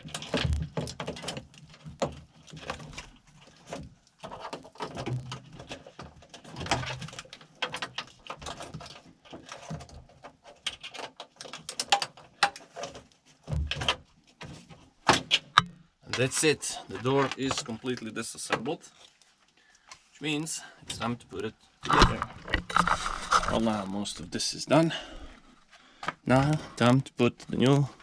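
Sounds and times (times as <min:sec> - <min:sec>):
plastic and metal parts rattling: 0:21.8 - 0:25.6.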